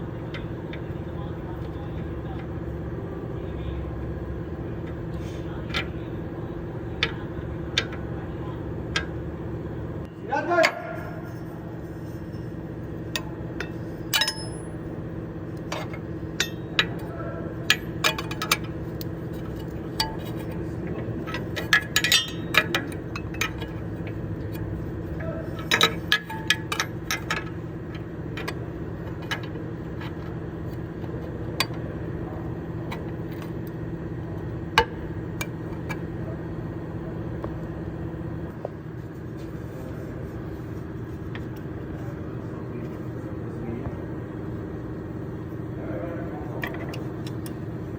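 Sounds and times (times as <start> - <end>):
steady low hum: 0.0 - 47.9
metal hand tools clinking: 21.3 - 23.8.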